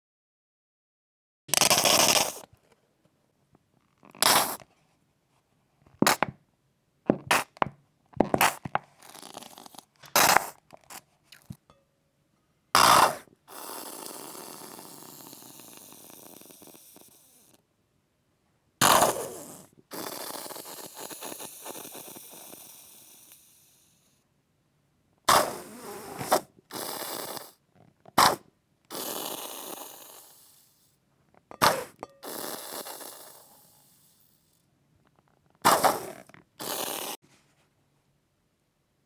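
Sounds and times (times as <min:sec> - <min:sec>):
sauce bottle squirting: 0:01.5 - 0:02.5, 0:04.1 - 0:04.6, 0:06.0 - 0:06.4, 0:07.1 - 0:11.6, 0:31.5 - 0:33.6, 0:35.6 - 0:37.2.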